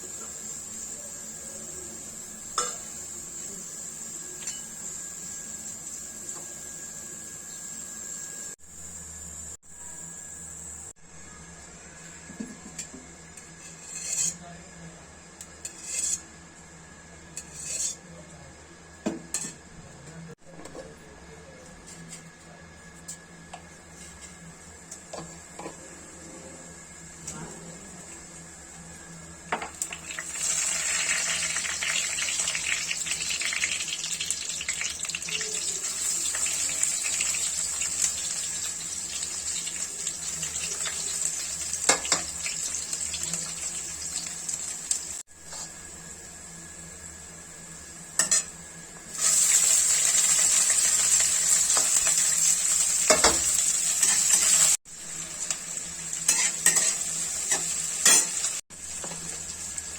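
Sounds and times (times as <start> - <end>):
food sizzling in a pan: 0.0 - 11.0, 15.5 - 16.3, 23.8 - 59.9.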